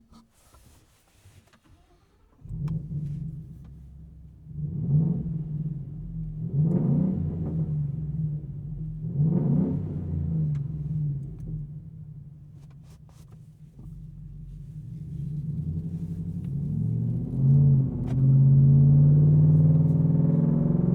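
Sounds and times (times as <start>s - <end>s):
engine starting: 1.6s - 2.6s
engine idling with revving: 13.6s - 20.9s.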